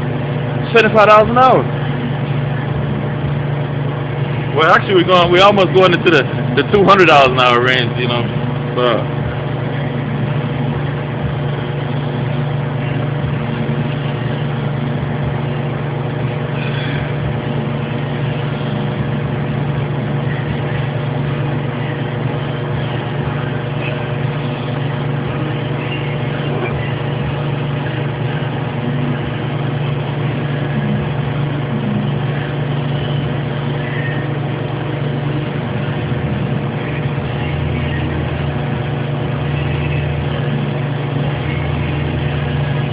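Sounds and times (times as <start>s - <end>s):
welding arc buzzing: 0.0s - 42.9s.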